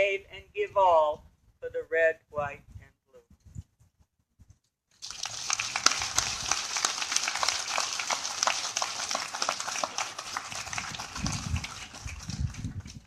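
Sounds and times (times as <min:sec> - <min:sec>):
audience applauding: 0:05.0 - 0:13.0.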